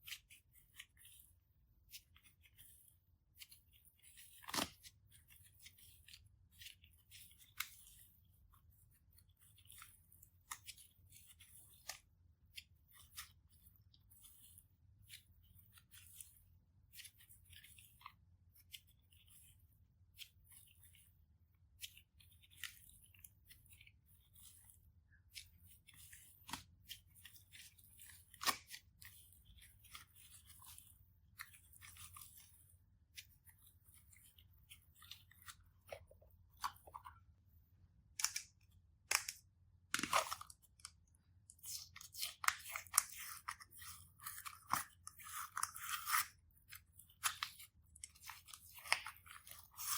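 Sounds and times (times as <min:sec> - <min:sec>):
slime crackling and clicking: 0:39.1 - 0:41.0.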